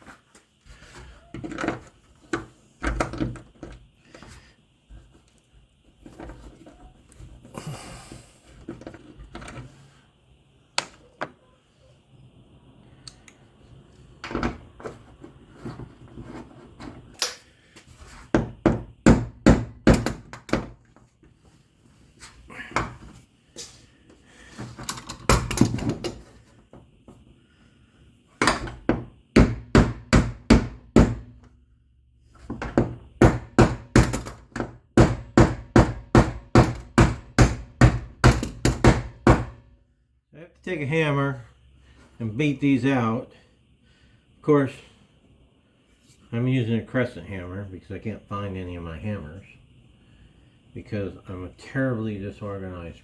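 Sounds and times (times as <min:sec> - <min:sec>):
wrench hammering bolts: 0:18.7 - 0:20.7, 0:24.8 - 0:26.2, 0:28.4 - 0:31.3, 0:32.6 - 0:39.5.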